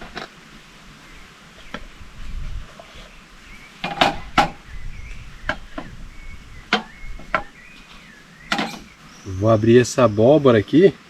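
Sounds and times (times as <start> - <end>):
cooking gear knocking and clinking: 8.5 - 8.9.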